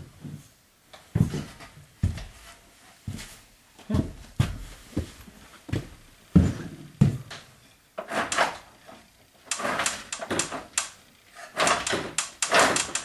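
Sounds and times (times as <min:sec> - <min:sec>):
heavy parts scraping and clattering: 0:08.0 - 0:13.0.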